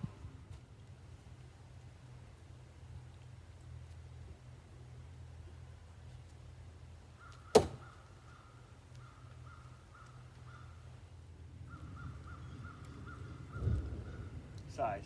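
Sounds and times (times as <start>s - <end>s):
bird calling: 7.2s - 10.8s, 11.6s - 14.4s
knife striking target: 7.6s - 7.8s.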